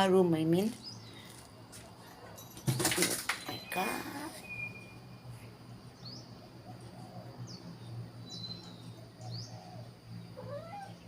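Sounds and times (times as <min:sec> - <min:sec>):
small bird chirping: 0:06.0 - 0:11.0.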